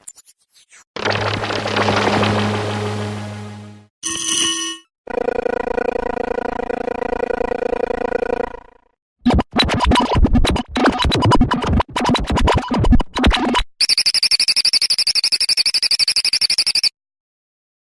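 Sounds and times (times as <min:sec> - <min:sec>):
digital chatter of clicks and blips: 0:09.3 - 0:16.9.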